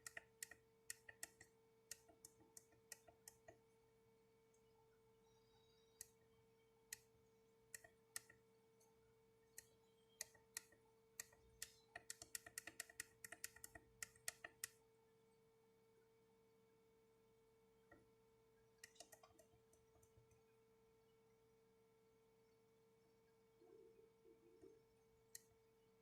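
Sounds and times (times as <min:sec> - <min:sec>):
small buttons clicking: 0:00.0 - 0:03.6, 0:07.7 - 0:08.4, 0:09.5 - 0:14.8, 0:18.8 - 0:20.4
faint steady hum: 0:00.0 - 0:26.0.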